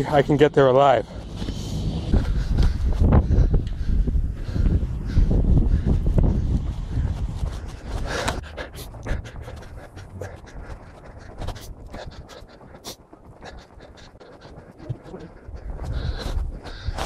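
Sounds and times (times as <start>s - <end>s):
person breathing hard: 1.0s - 17.0s
wind buffeting microphone: 1.2s - 17.0s
footsteps crunching in snow: 6.3s - 17.0s.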